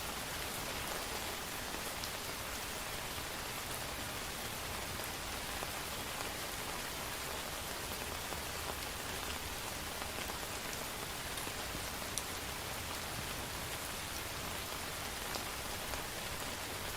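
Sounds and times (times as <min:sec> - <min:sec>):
rain on hard surfaces: 0:00.0 - 0:16.9.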